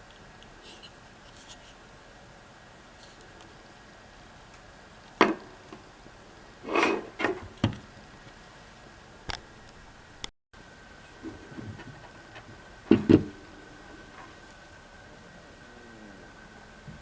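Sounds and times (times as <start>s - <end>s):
knocks: 12.9s - 13.4s.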